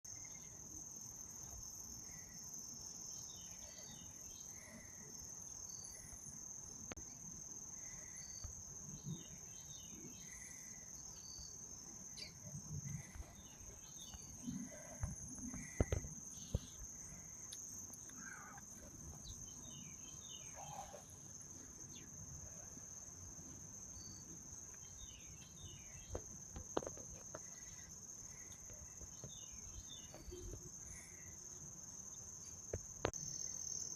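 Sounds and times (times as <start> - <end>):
insects trilling: 0.1 - 33.9
bird calling: 18.1 - 21.1.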